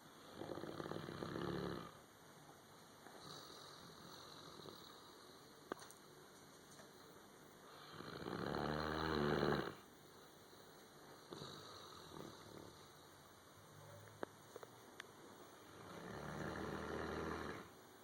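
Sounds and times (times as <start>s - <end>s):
dog snoring: 0.2s - 2.0s, 3.1s - 5.4s, 7.7s - 9.9s, 11.2s - 13.0s, 15.7s - 17.8s.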